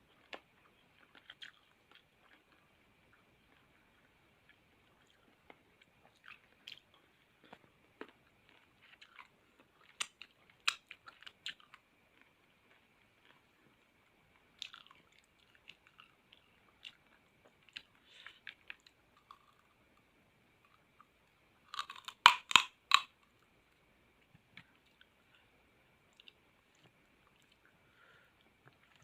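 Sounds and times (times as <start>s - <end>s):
person chewing crunchy fruit: 0.1s - 4.0s, 4.9s - 13.5s, 14.6s - 19.8s, 21.7s - 23.2s.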